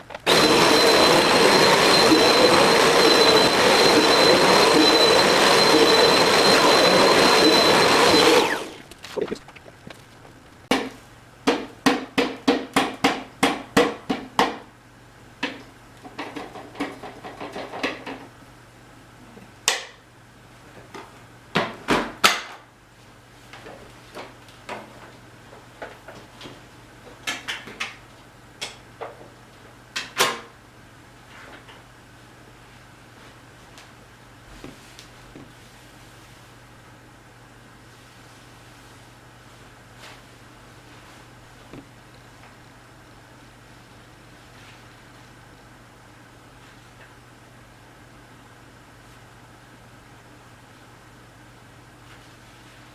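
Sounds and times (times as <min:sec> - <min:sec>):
vacuum cleaner whining: 0:00.0 - 0:09.4.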